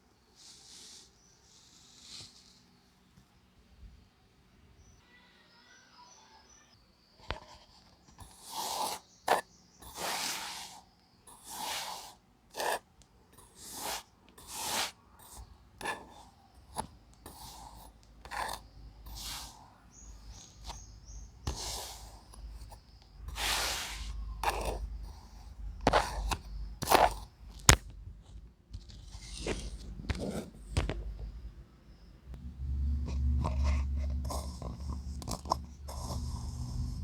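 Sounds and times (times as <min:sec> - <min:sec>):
kinetic sand scraping: 0:08.3 - 0:12.8, 0:13.5 - 0:15.4, 0:17.4 - 0:22.7, 0:23.3 - 0:24.8.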